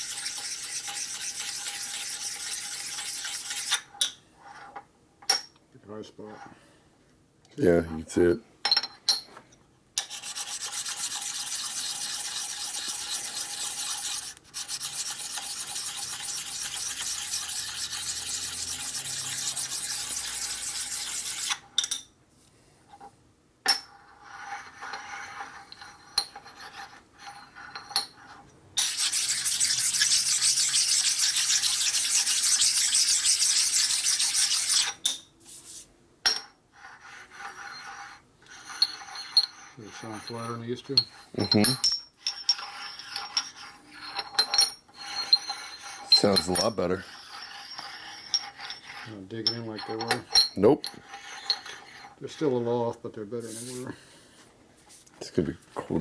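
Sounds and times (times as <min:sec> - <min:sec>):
honing stone scraping metal: 0:00.0 - 0:03.9, 0:10.0 - 0:21.7, 0:24.1 - 0:35.1, 0:36.8 - 0:53.9.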